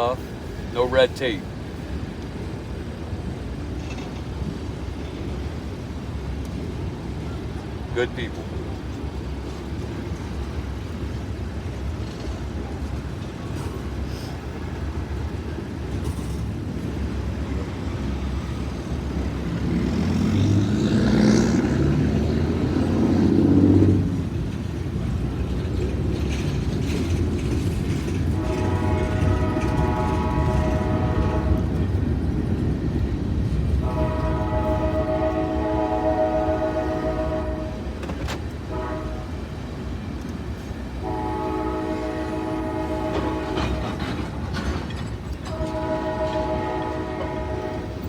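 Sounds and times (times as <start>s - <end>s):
train rumbling past: 0.0s - 48.0s
locomotive horn blast: 28.3s - 31.9s, 33.8s - 38.0s, 38.6s - 39.6s, 41.0s - 44.2s, 45.4s - 48.0s.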